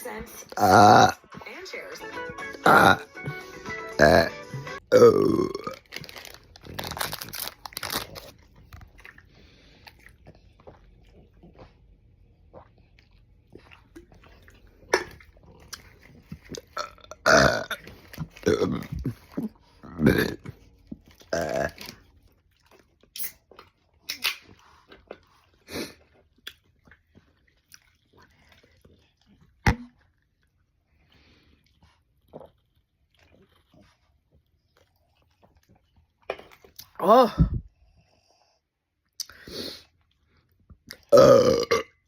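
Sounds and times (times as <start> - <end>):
gulping: 0.2 - 5.8, 14.0 - 20.6
man burping loudly: 0.6 - 1.3, 2.5 - 5.8, 16.8 - 17.8, 18.4 - 19.1, 20.0 - 20.4, 21.3 - 21.8, 41.1 - 41.9
wet mouth clicks: 24.1 - 24.6, 39.1 - 39.5.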